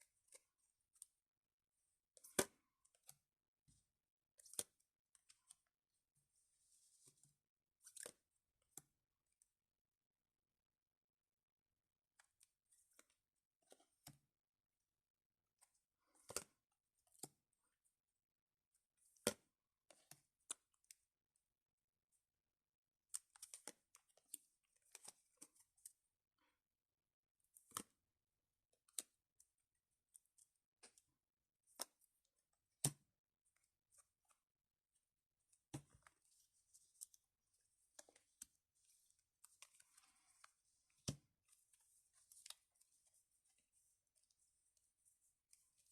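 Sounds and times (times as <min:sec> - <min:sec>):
cards clicking and tapping: 0:35.6 - 0:37.2.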